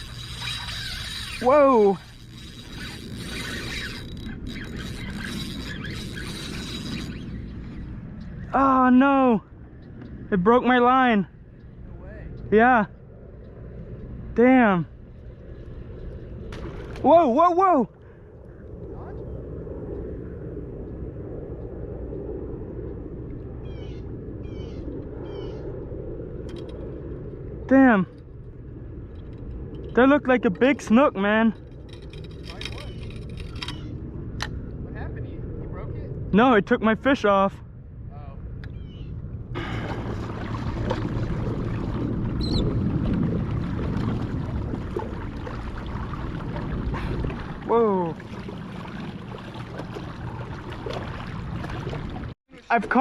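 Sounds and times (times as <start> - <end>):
low background rumble: 0.0 - 53.0
water noise: 0.0 - 53.0
wind over microphone: 0.0 - 53.0.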